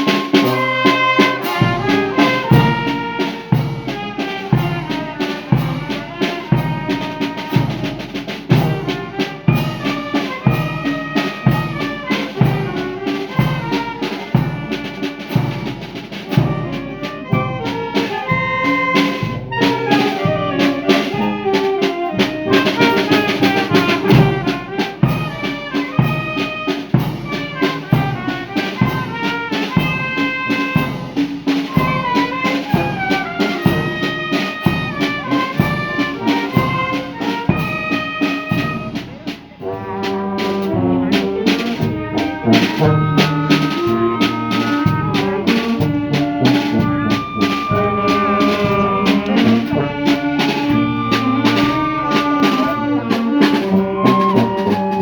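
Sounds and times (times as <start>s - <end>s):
brass band playing: 0.0s - 55.0s.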